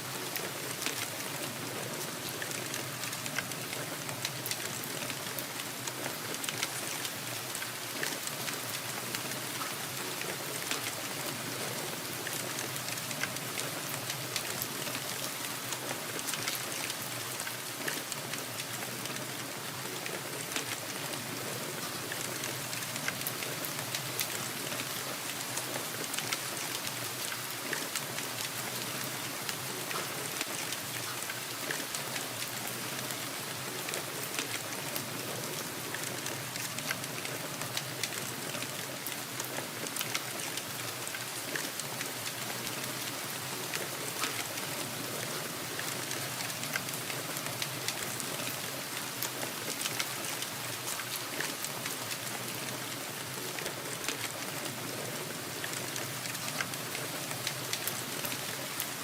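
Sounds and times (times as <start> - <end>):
steady rainfall: 0.0 - 59.0.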